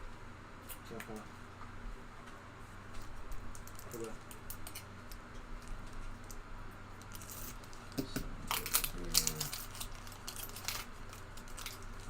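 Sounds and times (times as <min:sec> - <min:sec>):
foil wrappers crinkling: 0:03.5 - 0:06.4, 0:07.0 - 0:12.0.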